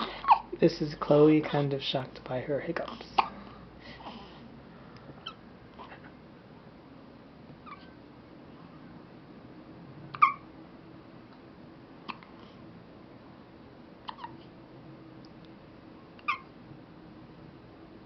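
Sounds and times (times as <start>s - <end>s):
pet hiccuping: 10.1s - 10.5s, 14.0s - 14.4s, 16.2s - 16.5s.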